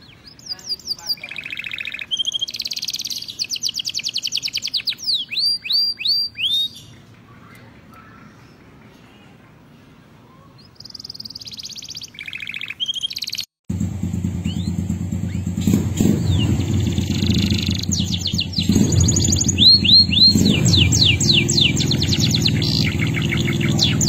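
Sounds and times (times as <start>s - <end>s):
canary singing trills: 0.0s - 9.4s, 10.3s - 13.5s, 14.4s - 24.0s
low engine-like rumble: 13.7s - 24.0s.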